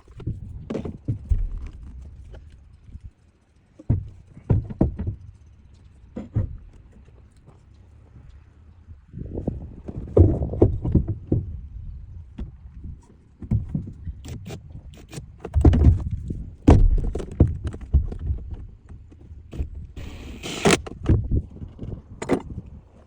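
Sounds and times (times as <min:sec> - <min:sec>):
plastic parts and tools clicking: 0:19.5 - 0:21.2
short rasping burst: 0:19.6 - 0:20.9.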